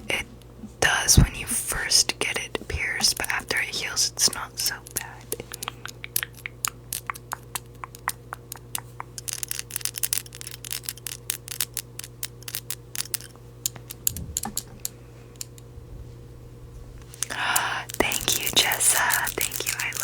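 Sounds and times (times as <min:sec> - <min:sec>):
steady low hum: 0:00.0 - 0:20.0
brief low rumble: 0:14.0 - 0:14.9, 0:15.7 - 0:17.2.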